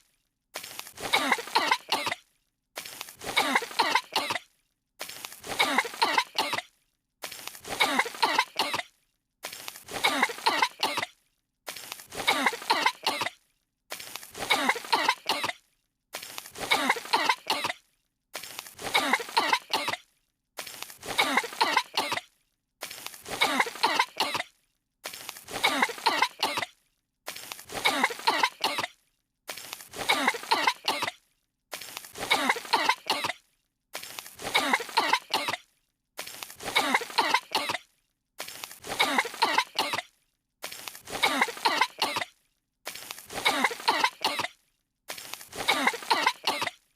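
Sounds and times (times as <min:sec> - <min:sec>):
cartoon girls coughing: 0:01.0 - 0:02.3, 0:03.2 - 0:04.5, 0:05.4 - 0:06.8, 0:07.6 - 0:08.9, 0:09.9 - 0:11.2, 0:12.1 - 0:13.4, 0:14.4 - 0:15.7, 0:16.6 - 0:17.8, 0:18.8 - 0:20.1, 0:21.0 - 0:22.4, 0:23.2 - 0:24.5, 0:25.5 - 0:26.8, 0:27.7 - 0:29.0, 0:29.9 - 0:31.2, 0:32.2 - 0:33.4, 0:34.4 - 0:35.7, 0:36.6 - 0:37.9, 0:38.8 - 0:40.1, 0:41.1 - 0:42.4, 0:43.3 - 0:44.6, 0:45.5 - 0:46.8.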